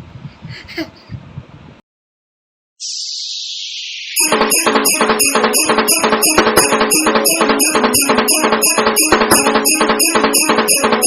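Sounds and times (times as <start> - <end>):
sustained melody: 2.8 - 11.0
music with jingling percussive beat: 4.2 - 11.0.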